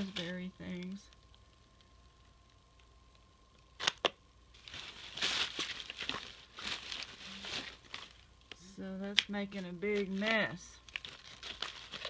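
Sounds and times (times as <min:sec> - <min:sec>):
plastic bags crinkling: 0:00.0 - 0:01.4, 0:03.8 - 0:12.0.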